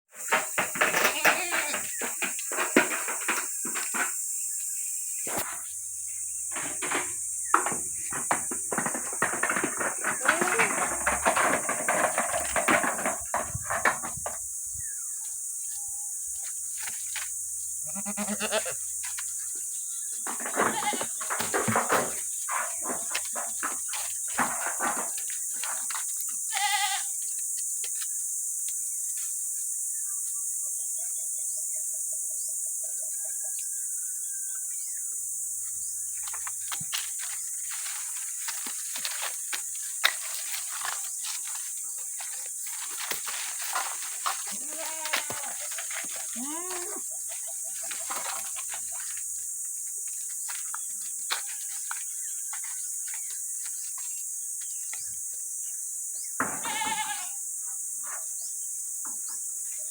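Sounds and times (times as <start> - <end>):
high-pitched hiss: 0.2 - 8.5
goat bleating: 1.0 - 1.9, 17.8 - 18.8, 20.6 - 21.1, 26.5 - 27.1, 44.5 - 47.0, 56.6 - 57.4.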